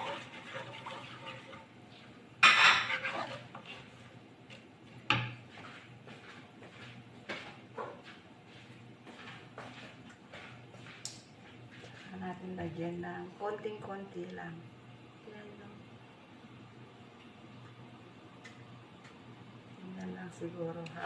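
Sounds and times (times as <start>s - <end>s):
utensils and cookware clattering: 0.0s - 1.7s, 2.4s - 4.0s.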